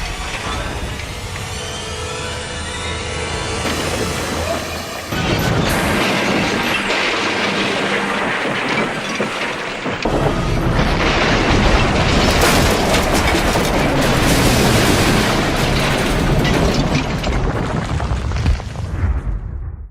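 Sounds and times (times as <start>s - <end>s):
rushing clattering noise: 3.5s - 19.1s
heavy low rumble: 9.8s - 19.9s.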